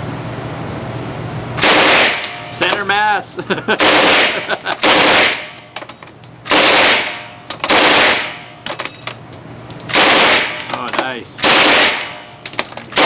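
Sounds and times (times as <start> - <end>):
machine gun bursts: 1.6 - 2.3, 3.8 - 5.4, 6.5 - 8.3, 9.9 - 10.6, 11.4 - 12.1.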